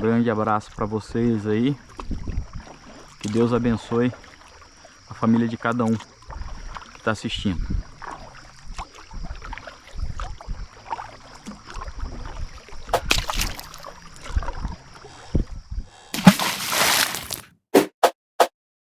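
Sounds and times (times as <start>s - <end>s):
water sloshing against hull: 5.9s - 15.4s, 16.2s - 17.4s
paddle strokes in water: 16.2s - 17.4s.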